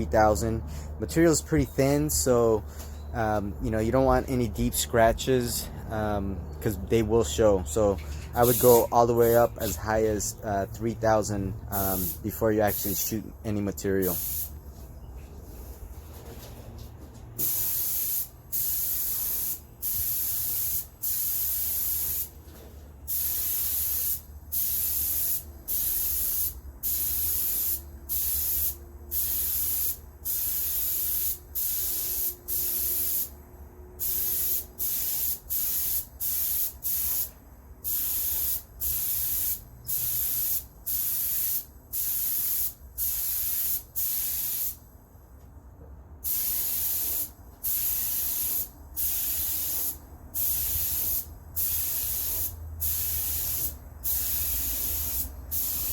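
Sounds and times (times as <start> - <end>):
spray gun hissing: 8.4 - 10.0, 11.7 - 13.1, 14.0 - 14.5, 17.4 - 22.3, 23.1 - 33.4, 34.0 - 44.8, 46.2 - 55.9.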